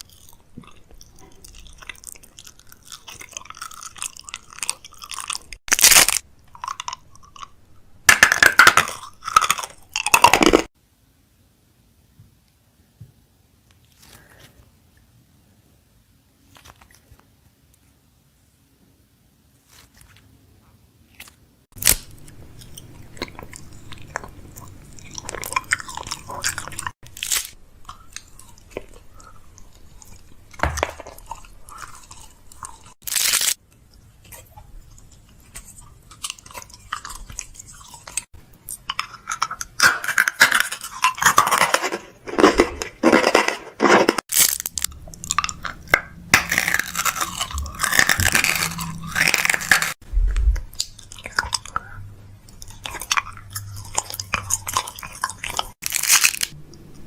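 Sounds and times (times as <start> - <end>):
plastic packaging crinkling: 33.0 - 33.6, 40.2 - 51.3, 53.9 - 56.6.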